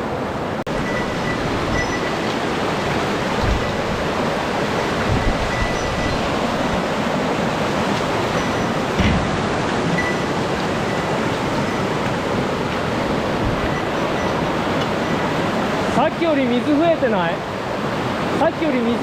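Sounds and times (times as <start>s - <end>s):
stream water rushing: 0.0s - 19.0s
dull low bumps: 0.8s - 4.4s, 8.0s - 14.2s.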